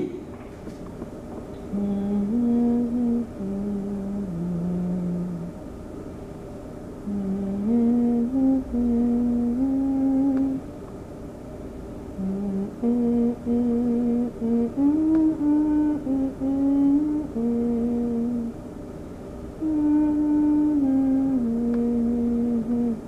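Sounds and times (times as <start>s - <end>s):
person humming a slow tune: 1.6s - 5.6s, 7.0s - 10.7s, 12.2s - 18.6s, 19.6s - 23.0s.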